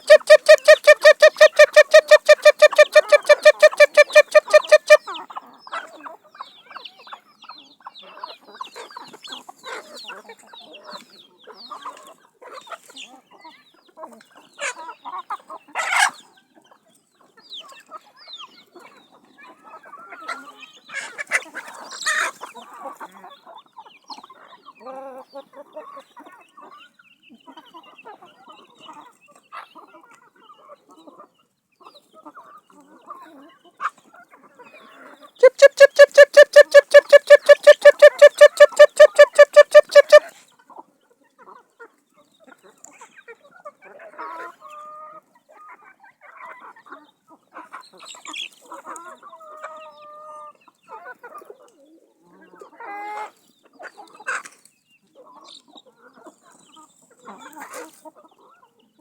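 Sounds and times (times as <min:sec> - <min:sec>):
chicken squawks: 0:00.0 - 0:05.0, 0:35.4 - 0:40.3
chickens clucking: 0:00.0 - 0:05.0, 0:35.4 - 0:40.2
pulsing squeaky tone: 0:00.0 - 0:05.0, 0:35.4 - 0:40.2.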